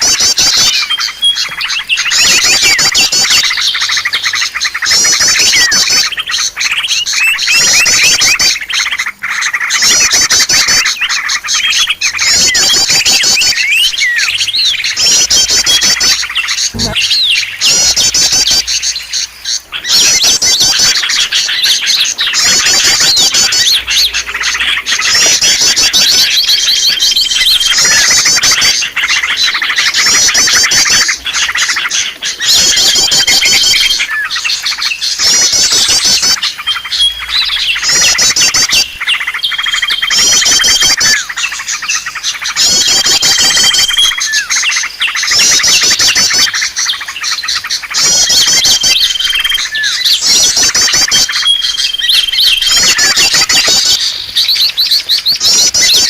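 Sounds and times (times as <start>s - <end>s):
songbirds chirping chorus: 0.0s - 56.0s
high bird whistle: 42.5s - 46.6s.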